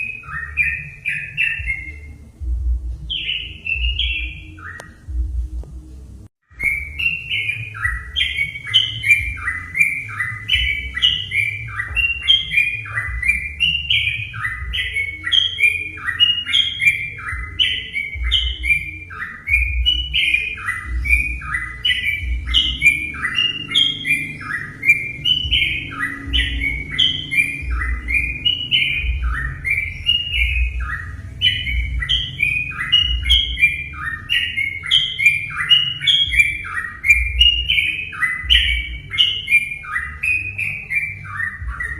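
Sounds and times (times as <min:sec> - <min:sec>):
bird singing bubbling phrases: 0:00.0 - 0:05.2, 0:06.5 - 0:41.9.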